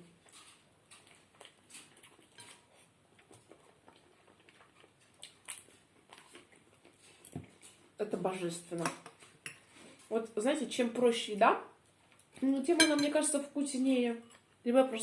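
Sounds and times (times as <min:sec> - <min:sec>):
quiet chewing: 0:00.0 - 0:08.0, 0:11.8 - 0:12.4
cutlery clicking on a plate: 0:12.8 - 0:13.1.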